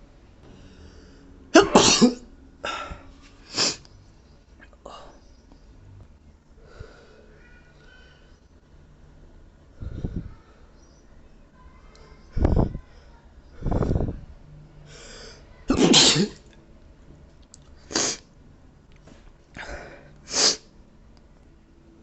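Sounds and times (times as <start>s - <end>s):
person sneezing: 1.6s - 3.8s, 15.7s - 16.4s, 19.6s - 20.7s.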